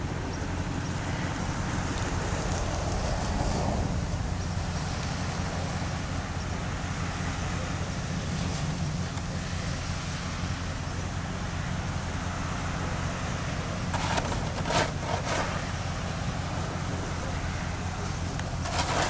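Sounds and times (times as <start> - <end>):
vehicle engine and road rumble: 0.0 - 19.0
scraping or crunching strokes: 13.8 - 15.8, 18.4 - 19.0.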